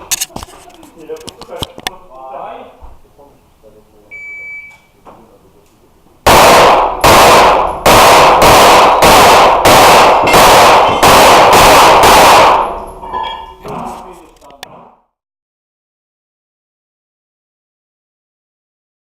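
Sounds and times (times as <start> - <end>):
pistol shots echoing indoors: 6.2 - 13.0.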